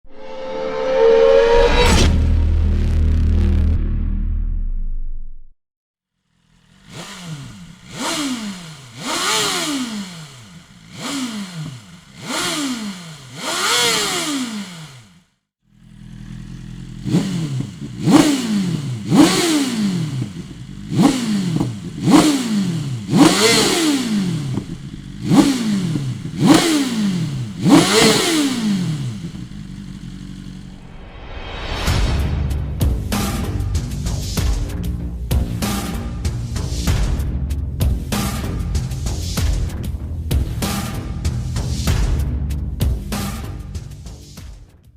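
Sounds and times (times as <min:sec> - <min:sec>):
motorcycle engine revving: 0:06.2 - 0:31.1, 0:37.8 - 0:42.2, 0:42.8 - 0:44.2.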